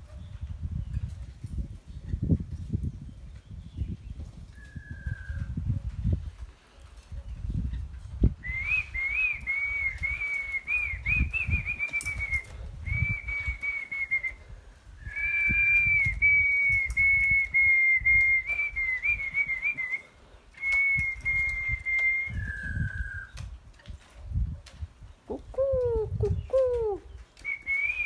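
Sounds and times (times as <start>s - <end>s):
high whistling: 8.4s - 23.4s, 27.4s - 28.0s.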